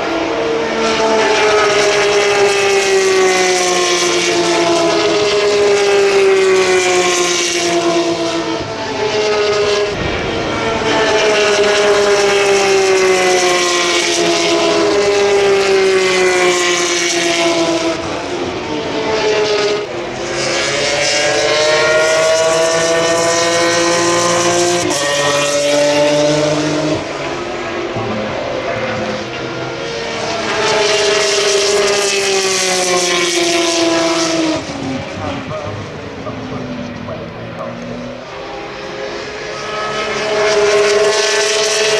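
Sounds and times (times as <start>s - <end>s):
racing cars passing at speed: 0.0s - 41.9s.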